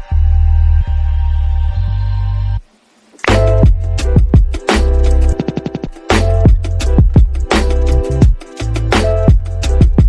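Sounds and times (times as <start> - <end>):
electronic music with heavy bass: 3.2 - 10.0.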